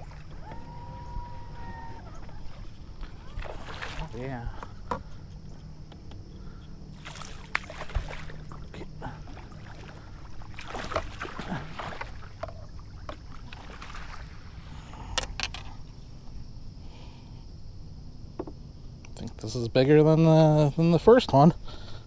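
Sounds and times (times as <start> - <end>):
water splashing against boat: 0.0 - 16.0
steady low hum: 0.0 - 22.0.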